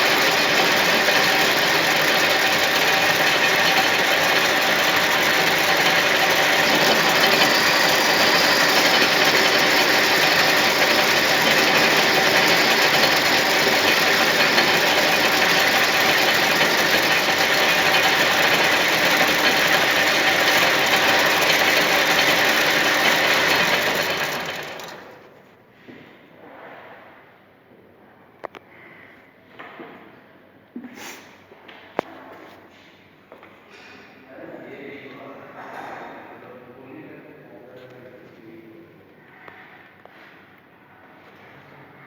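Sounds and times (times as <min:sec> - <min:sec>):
metal lathe running: 0:00.0 - 0:25.3.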